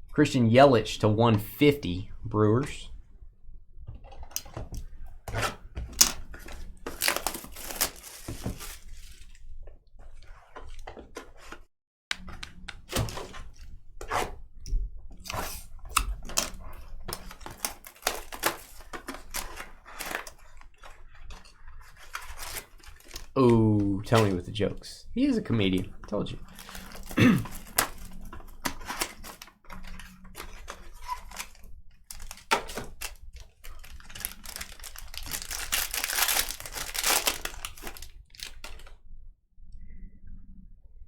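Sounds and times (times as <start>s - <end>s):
hands handling cards and packaging: 5.3s - 9.4s, 15.3s - 24.6s, 25.6s - 38.9s.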